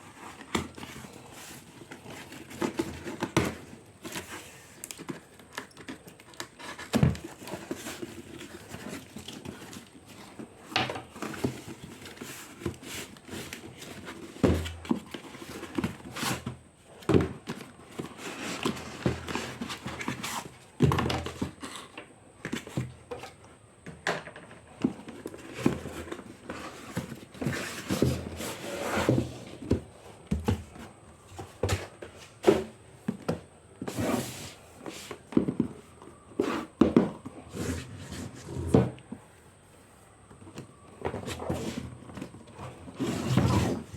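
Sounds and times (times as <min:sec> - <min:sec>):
knocks and thumps on cardboard box: 0:14.1 - 0:21.6, 0:24.8 - 0:34.0.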